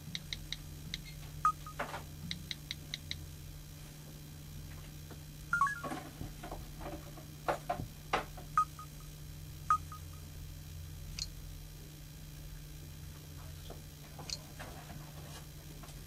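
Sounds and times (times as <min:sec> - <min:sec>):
high electronic chirp: 0:05.6 - 0:05.9, 0:08.6 - 0:09.0, 0:09.7 - 0:10.2
phone key beeps: 0:05.6 - 0:05.9, 0:09.7 - 0:10.1.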